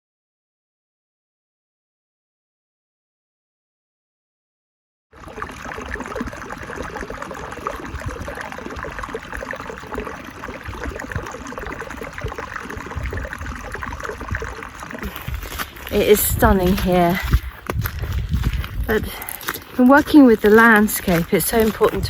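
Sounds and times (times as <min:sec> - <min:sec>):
water splashing over rocks: 0:05.2 - 0:22.0.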